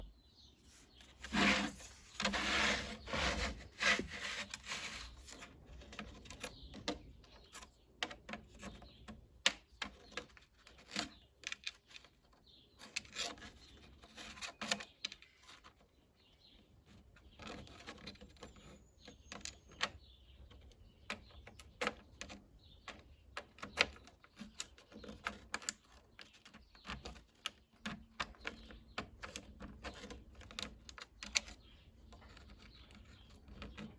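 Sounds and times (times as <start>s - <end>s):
scraping and rubbing: 0.6s - 7.7s, 12.8s - 15.8s.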